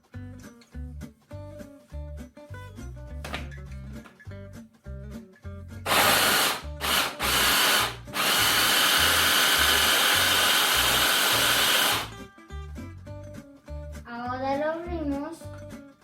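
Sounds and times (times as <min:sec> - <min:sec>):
electric blender motor: 0:05.9 - 0:12.2.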